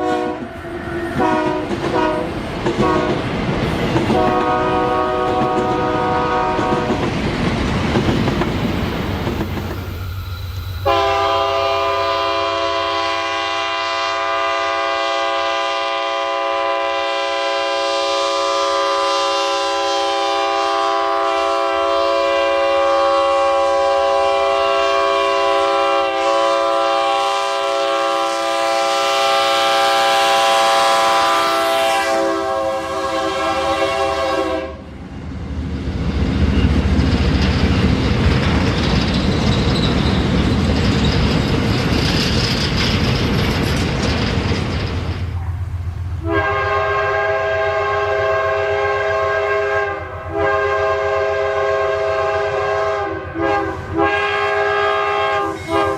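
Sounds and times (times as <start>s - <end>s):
locomotive air horn: 0.0s - 3.2s, 4.1s - 7.0s, 10.8s - 34.9s, 46.2s - 55.9s
train rumbling past: 0.0s - 55.9s.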